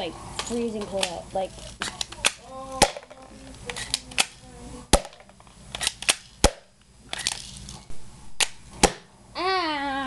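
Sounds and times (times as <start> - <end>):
airsoft gun shots: 5.9 - 6.7, 8.4 - 9.1.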